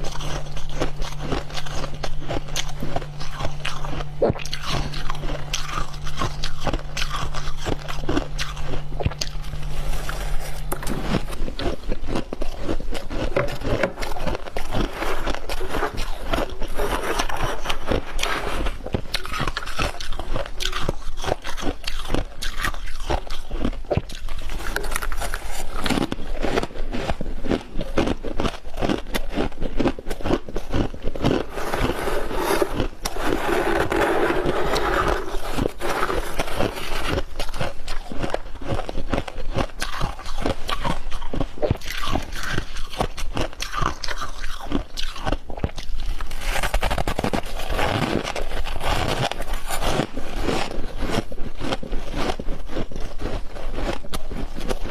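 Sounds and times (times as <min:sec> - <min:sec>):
crunching and chewing frost: 0:00.0 - 0:54.9
low steady hum: 0:00.0 - 0:54.9.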